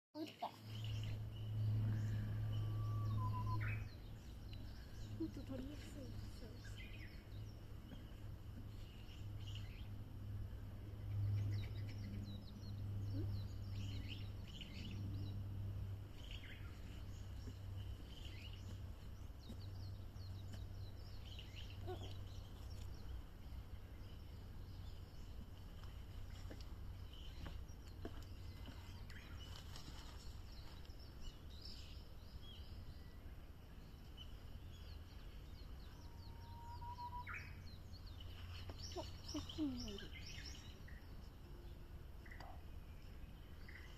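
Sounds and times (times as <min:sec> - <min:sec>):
birds chirping: 0:00.2 - 0:43.9
low outdoor rumble: 0:00.4 - 0:43.9
upward sweeping whistled bird note: 0:02.6 - 0:03.9, 0:36.3 - 0:37.4.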